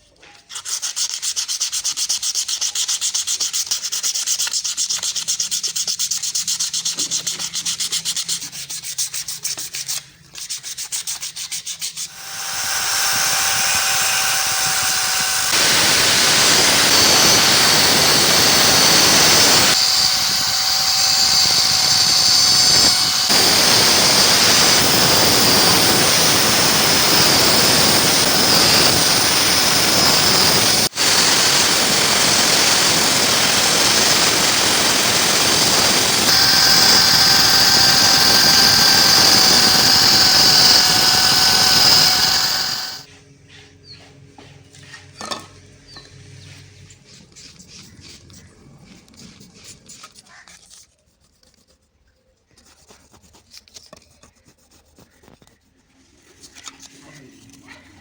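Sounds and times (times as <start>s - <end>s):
power tool whining: 12.1s - 43.1s.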